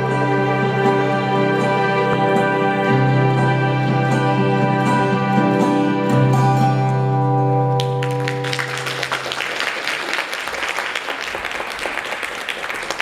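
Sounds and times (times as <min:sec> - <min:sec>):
audience applause: 0:07.8 - 0:13.0.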